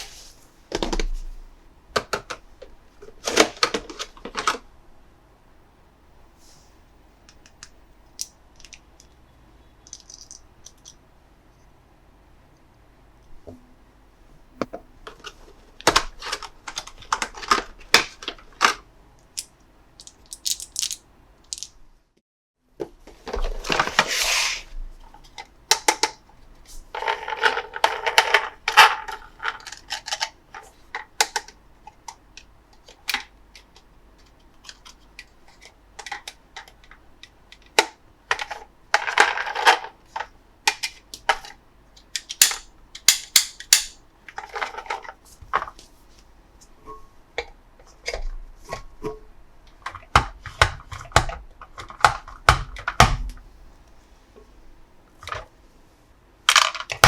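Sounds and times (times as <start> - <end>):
plastic toy pieces clicking: 9.8 - 11.0, 19.4 - 21.7, 32.8 - 45.0.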